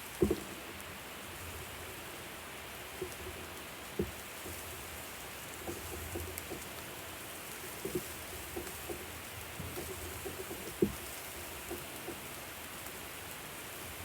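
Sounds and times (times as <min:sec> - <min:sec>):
food sizzling on a grill: 0:00.0 - 0:14.0
soft knocks: 0:00.1 - 0:00.6, 0:04.0 - 0:04.6, 0:07.7 - 0:12.2.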